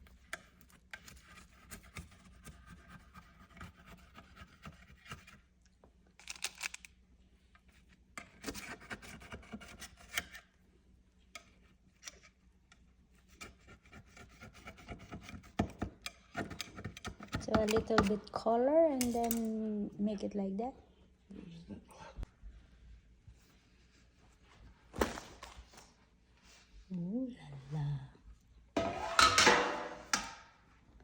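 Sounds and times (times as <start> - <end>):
utensils scraping a bowl: 0.0 - 5.4, 8.2 - 10.4, 13.2 - 18.4, 28.8 - 30.4.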